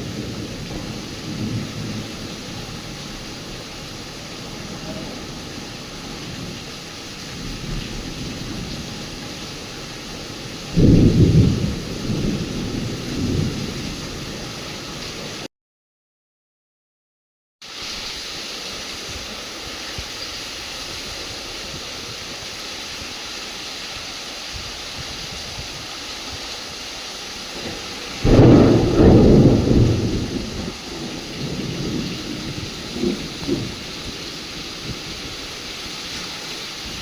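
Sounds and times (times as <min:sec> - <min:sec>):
thunder clap and rumbles: 0:00.0 - 0:06.7, 0:07.3 - 0:14.6, 0:27.6 - 0:35.5
steady rain falling: 0:00.0 - 0:15.5, 0:17.6 - 0:37.0.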